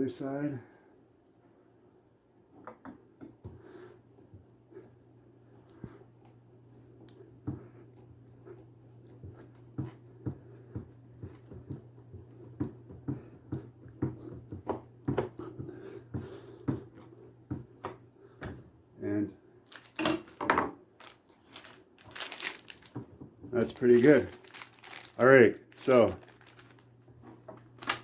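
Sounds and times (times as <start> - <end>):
steady low hum: 3.0 - 19.7.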